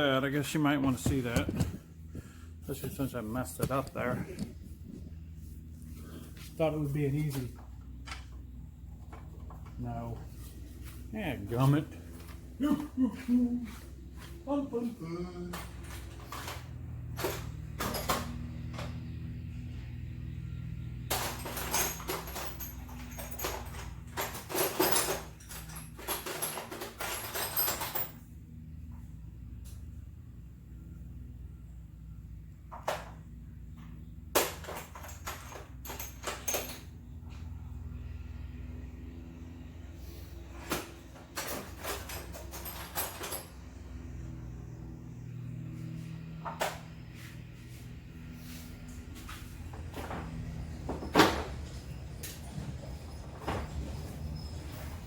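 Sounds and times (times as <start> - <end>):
steady low hum: 0.0 - 17.2
hand tools clinking on metal: 21.1 - 28.2.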